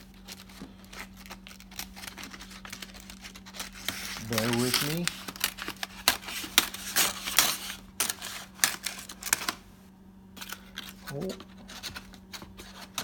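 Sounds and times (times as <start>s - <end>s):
packaging clicks taps and rustles: 0.1s - 9.6s.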